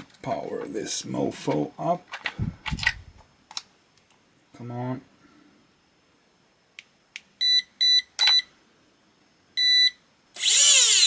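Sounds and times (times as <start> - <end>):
electric motor whirring: 10.4 - 11.0.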